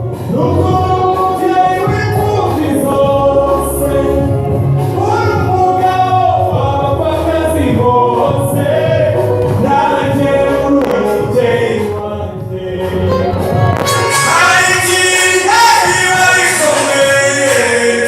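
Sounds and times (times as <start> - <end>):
choir singing gospel: 0.0 - 18.0
low bass line: 0.0 - 18.0
light percussion beat: 8.1 - 17.7.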